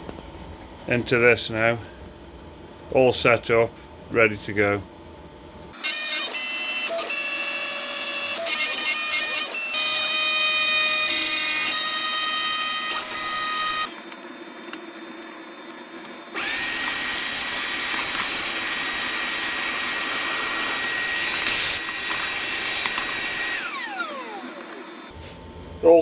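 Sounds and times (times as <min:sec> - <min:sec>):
router spindle whining: 0:05.8 - 0:25.2.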